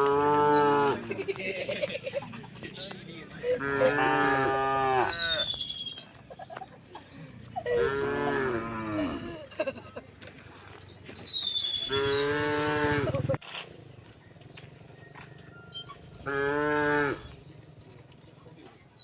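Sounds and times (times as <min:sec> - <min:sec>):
cows mooing: 0:00.0 - 0:01.1, 0:03.4 - 0:05.4, 0:07.6 - 0:09.5, 0:11.8 - 0:13.2, 0:16.0 - 0:17.4
birds chirping: 0:00.0 - 0:19.0.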